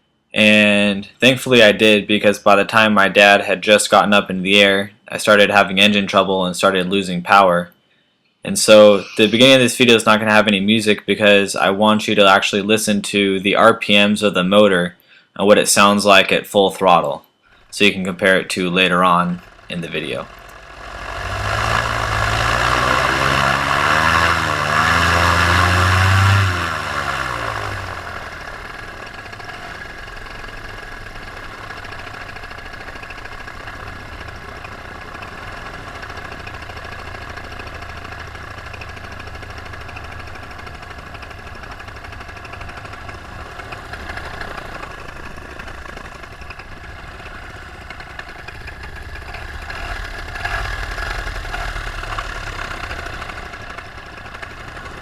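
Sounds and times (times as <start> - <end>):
paramotor engine running: 17.6 - 55.0.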